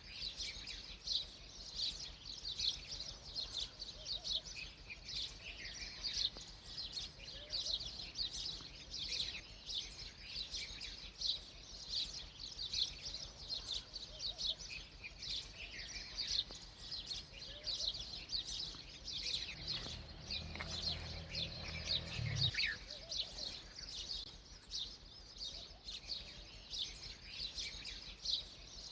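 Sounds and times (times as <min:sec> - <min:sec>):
small birds chirping: 0:00.0 - 0:28.9.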